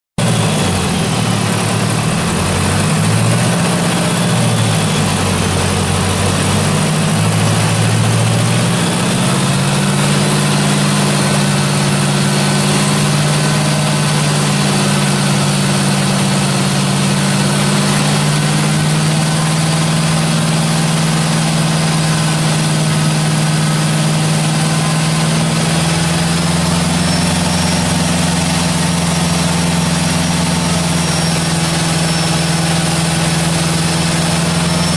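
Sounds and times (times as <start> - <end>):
car engine running: 0.2 - 34.9.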